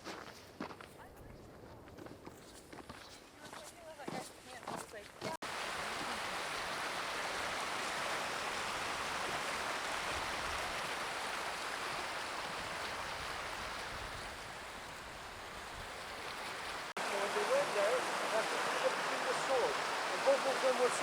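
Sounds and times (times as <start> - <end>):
waterfall roaring: 16.8 - 21.0.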